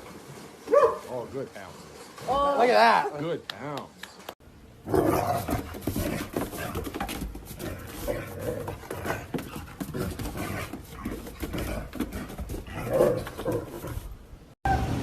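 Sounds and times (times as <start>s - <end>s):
dogs breathing and mouth noises: 5.4s - 14.2s.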